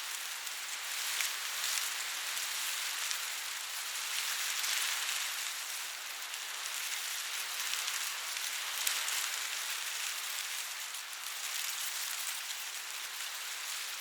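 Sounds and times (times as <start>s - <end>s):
corn leaves rustling in wind: 0.0s - 14.0s.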